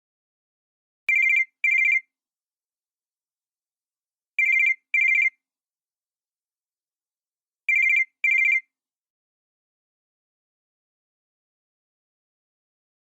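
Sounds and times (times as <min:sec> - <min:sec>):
cell phone ringing: 0:01.1 - 0:02.1, 0:04.4 - 0:05.4, 0:07.7 - 0:08.8.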